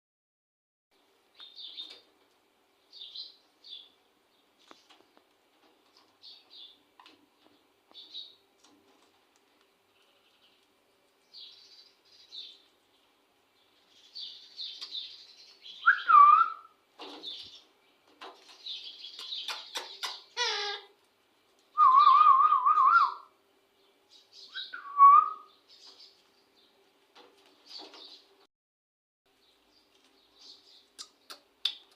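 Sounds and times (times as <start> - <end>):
parakeet chirping: 19.0 - 20.8.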